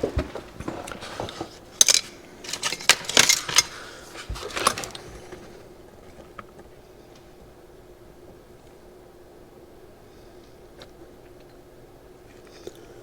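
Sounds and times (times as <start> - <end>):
metal tools clinking and rattling: 1.7 - 3.8.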